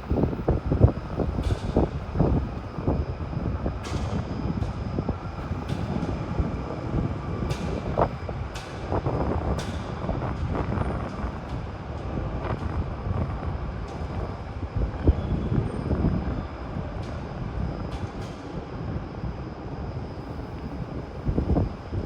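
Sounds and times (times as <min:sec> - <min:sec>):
strong wind buffeting microphone: 0:00.0 - 0:22.0.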